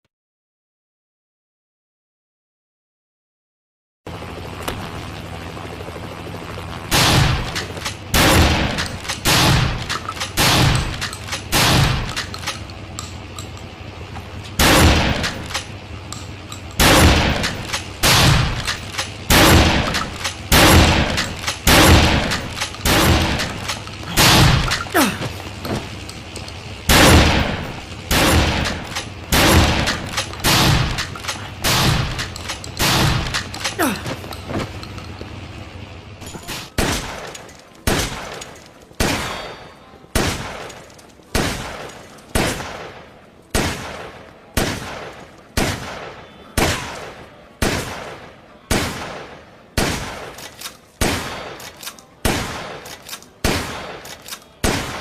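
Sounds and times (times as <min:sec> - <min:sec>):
shotgun shots with echo: 0:08.2 - 0:12.1, 0:14.6 - 0:15.4, 0:19.3 - 0:24.8.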